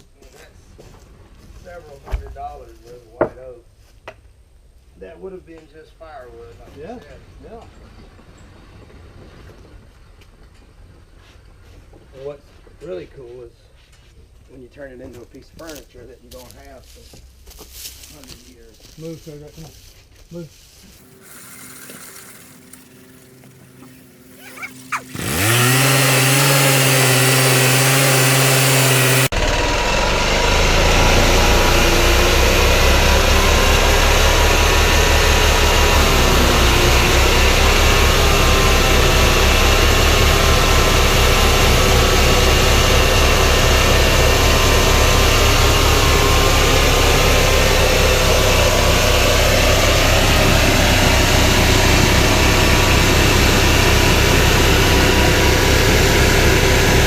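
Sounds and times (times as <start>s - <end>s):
gasoline engine starting and running: 21.0s - 57.0s.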